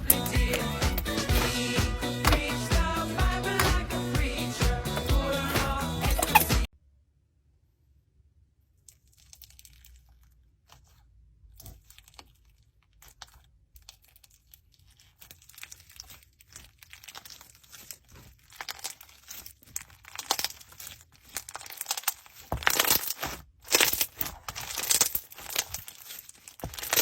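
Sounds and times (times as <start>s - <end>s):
slime crackling and popping: 8.9s - 27.0s.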